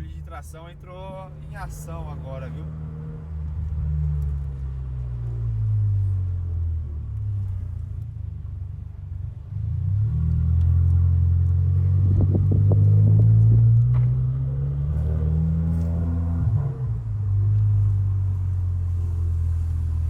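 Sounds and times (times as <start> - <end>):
car exhaust drone: 0.0 - 20.0
exhaust pops: 10.2 - 20.0.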